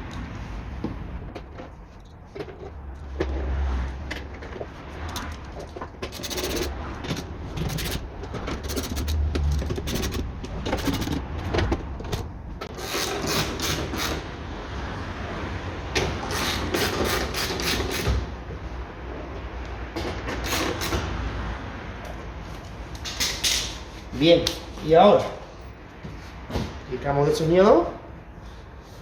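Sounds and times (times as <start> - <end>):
metal scraping and rubbing: 4.3 - 14.2.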